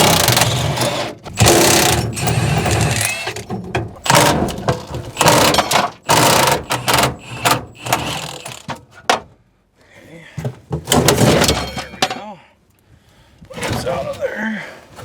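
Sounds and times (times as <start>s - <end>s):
impact wrench rattling: 0.0s - 8.7s.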